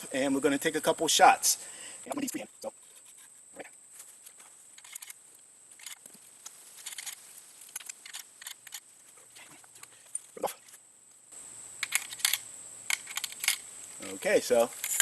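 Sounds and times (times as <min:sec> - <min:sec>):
cartridges clicking and clinking: 0:04.8 - 0:05.2, 0:11.8 - 0:13.7, 0:14.5 - 0:15.0.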